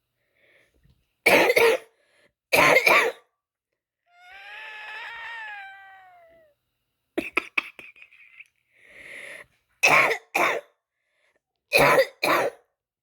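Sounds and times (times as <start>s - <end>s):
woman coughing: 1.3s - 1.9s, 2.6s - 3.2s, 9.8s - 10.7s, 11.8s - 12.6s.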